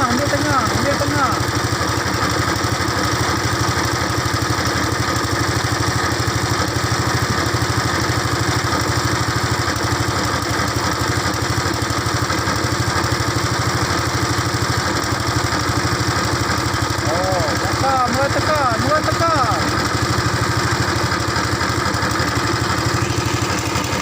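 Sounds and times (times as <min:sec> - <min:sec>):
small engine running: 0:00.0 - 0:24.0.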